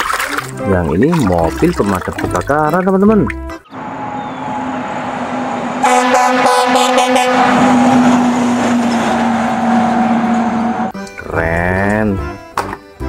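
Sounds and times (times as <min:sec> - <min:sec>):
vehicle drone: 0:03.7 - 0:11.0
rapid pulsing horn blasts: 0:03.8 - 0:11.0.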